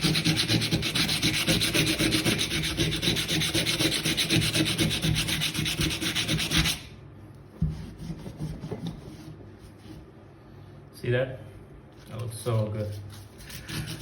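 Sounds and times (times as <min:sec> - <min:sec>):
sandpaper scrubbing metal: 0:00.0 - 0:06.9, 0:12.5 - 0:14.0.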